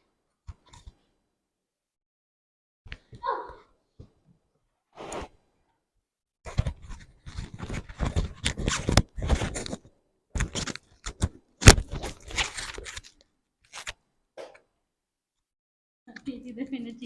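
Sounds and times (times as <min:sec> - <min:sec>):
rustling and scraping: 0:06.5 - 0:14.0.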